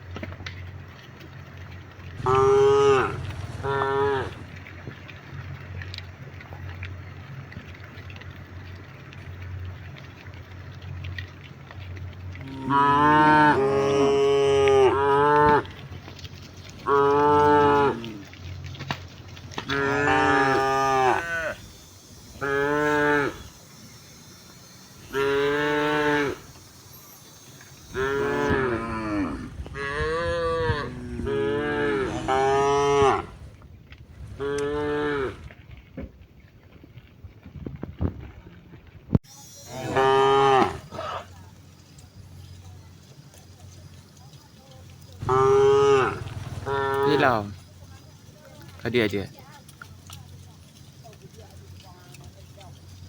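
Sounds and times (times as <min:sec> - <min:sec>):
cattle mooing: 0:02.2 - 0:04.5, 0:12.4 - 0:15.8, 0:16.8 - 0:18.3, 0:19.6 - 0:23.7, 0:24.8 - 0:26.8, 0:27.6 - 0:33.5, 0:34.2 - 0:35.5, 0:39.6 - 0:41.4, 0:45.2 - 0:47.5.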